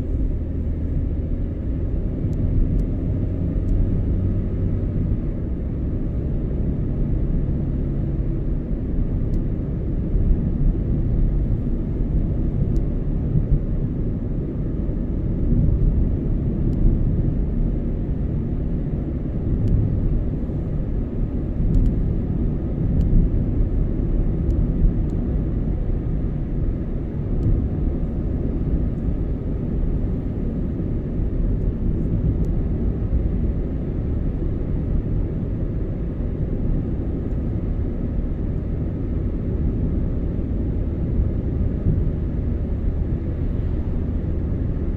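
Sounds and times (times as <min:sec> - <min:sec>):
road and engine rumble: 0:00.0 - 0:44.9
faint light ticks: 0:02.2 - 0:02.9, 0:12.7 - 0:12.9, 0:19.6 - 0:19.8, 0:21.6 - 0:22.0, 0:22.9 - 0:23.2, 0:27.4 - 0:27.6.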